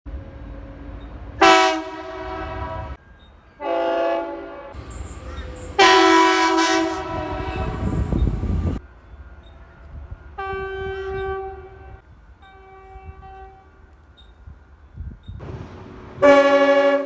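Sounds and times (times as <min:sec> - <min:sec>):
train horn blasts: 0:01.4 - 0:03.0, 0:03.6 - 0:04.9, 0:05.8 - 0:08.1, 0:09.4 - 0:13.8, 0:15.4 - 0:17.0
low rumble: 0:15.4 - 0:16.8.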